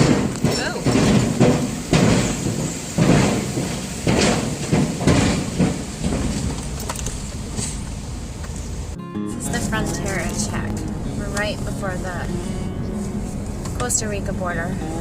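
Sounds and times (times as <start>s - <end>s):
thumps and rattles: 0.0s - 8.0s
truck cabin road rumble: 0.0s - 15.0s.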